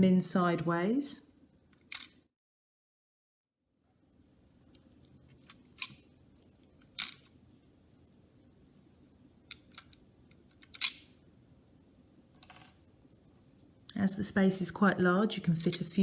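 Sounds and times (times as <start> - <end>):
plastic pieces clicking: 6.8 - 7.3, 9.5 - 11.1.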